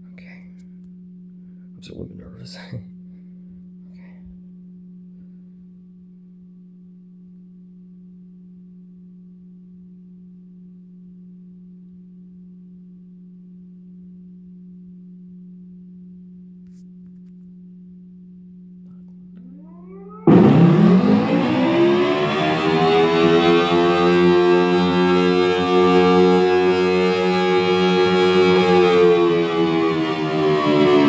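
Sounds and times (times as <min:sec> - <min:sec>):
steady low hum: 0:15.9 - 0:23.9.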